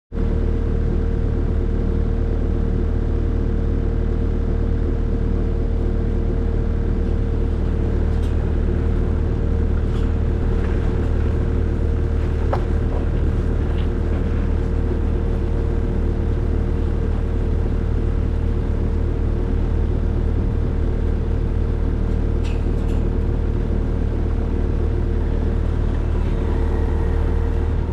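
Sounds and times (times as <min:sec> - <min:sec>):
skid steer engine running: 0:00.1 - 0:27.9
light clicks and clanks: 0:22.4 - 0:23.2.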